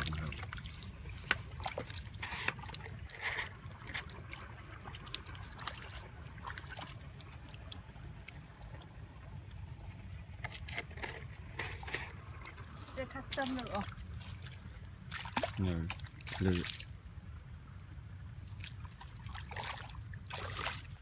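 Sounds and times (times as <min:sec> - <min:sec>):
water drips: 0:00.0 - 0:10.5
steady low rumble: 0:00.0 - 0:21.0
water splashing and sloshing: 0:00.0 - 0:21.0.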